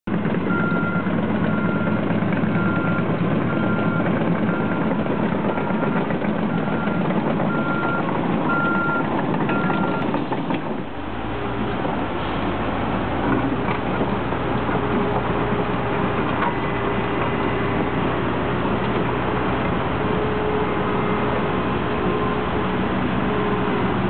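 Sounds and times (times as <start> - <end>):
diesel engine running: 0.0 - 24.0
reversing alarm beeping: 0.5 - 4.9, 5.5 - 10.0.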